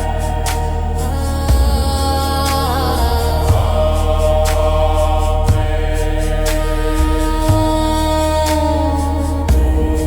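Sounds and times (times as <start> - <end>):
low steady drone: 0.0 - 10.0.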